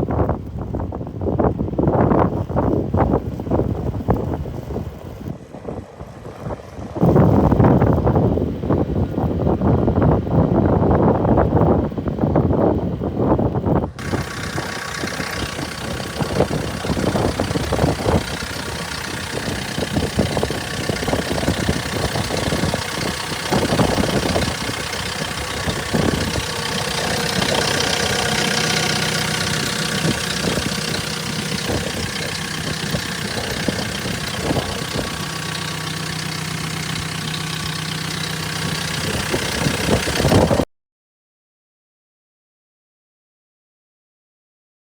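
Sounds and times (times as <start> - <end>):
diesel engine idling: 13.6 - 40.6.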